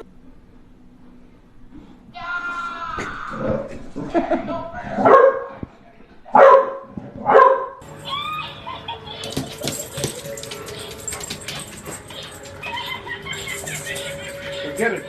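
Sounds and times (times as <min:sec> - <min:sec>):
dog barking: 0:05.0 - 0:05.6, 0:06.3 - 0:07.8.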